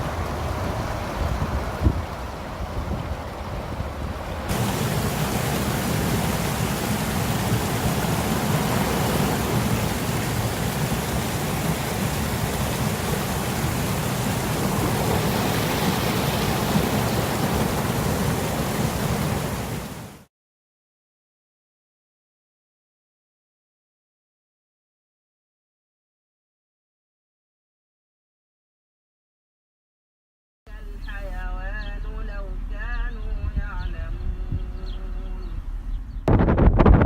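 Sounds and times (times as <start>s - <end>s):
running water rushing: 0.0s - 20.3s.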